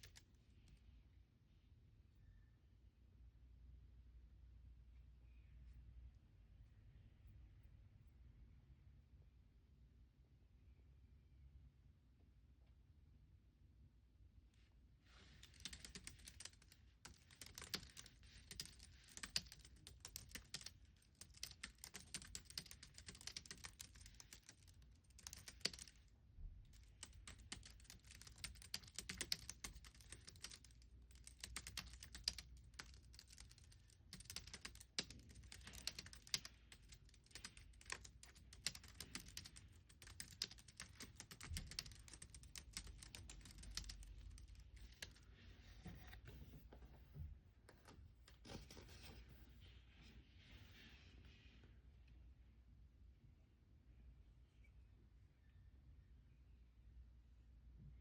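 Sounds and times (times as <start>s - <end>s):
computer keyboard typing: 0.0s - 0.3s, 15.4s - 45.2s.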